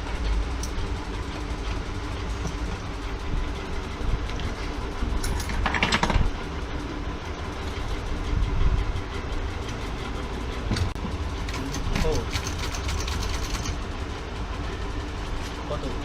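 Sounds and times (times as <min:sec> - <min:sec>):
steady low rumble: 0:00.0 - 0:12.3
sharp clicks and rattles: 0:05.2 - 0:06.4, 0:10.7 - 0:13.8.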